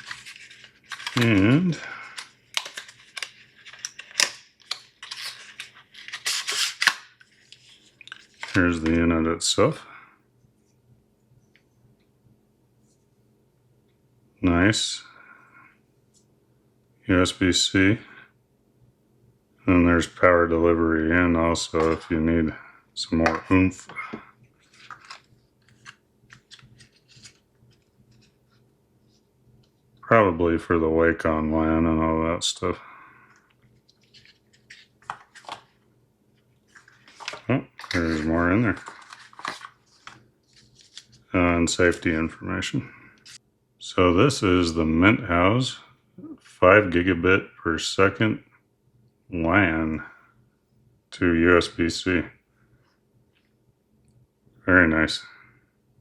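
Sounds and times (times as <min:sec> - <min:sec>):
packaging rustling: 0:00.0 - 0:08.6, 0:24.6 - 0:28.4, 0:33.8 - 0:35.8, 0:36.7 - 0:41.2.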